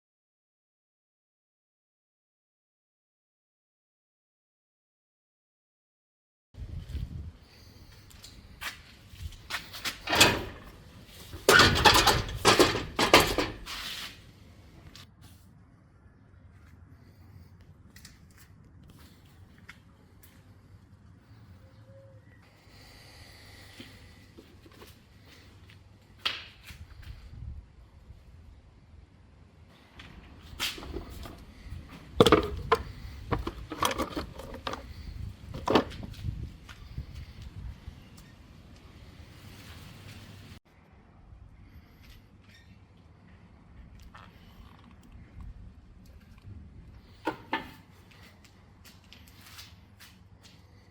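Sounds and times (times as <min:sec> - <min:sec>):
tools and parts clanking: 0:09.5 - 0:13.9, 0:30.6 - 0:36.2
scraping and rattling: 0:09.7 - 0:14.2, 0:30.6 - 0:36.1
knocks and clatters: 0:09.9 - 0:13.7.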